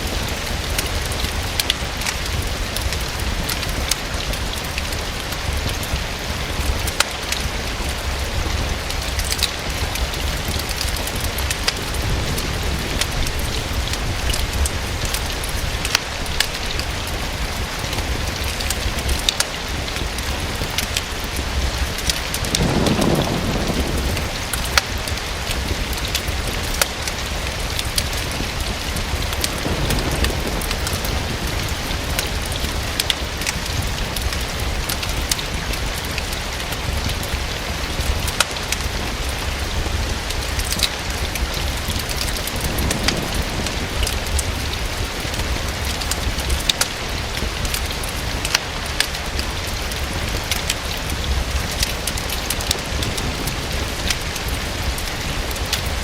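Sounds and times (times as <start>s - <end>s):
rain against a window: 0.0s - 56.0s
wood fire crackling: 0.0s - 56.0s
low rumble: 29.0s - 34.8s.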